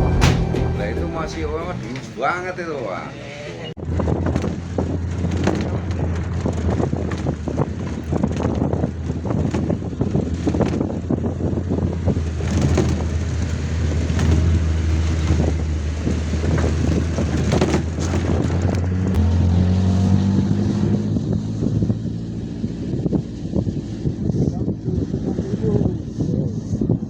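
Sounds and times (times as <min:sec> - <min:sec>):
vehicle engine humming: 0:00.0 - 0:27.0
wind on microphone: 0:03.8 - 0:27.0.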